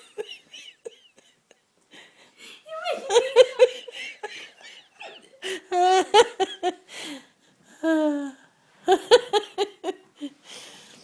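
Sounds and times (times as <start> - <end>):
people laughing: 2.8 - 6.8.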